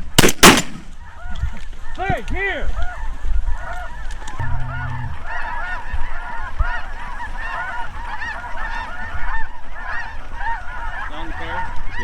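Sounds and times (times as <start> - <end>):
geese honking and cackling: 0.9 - 12.0
low hum: 4.4 - 6.2.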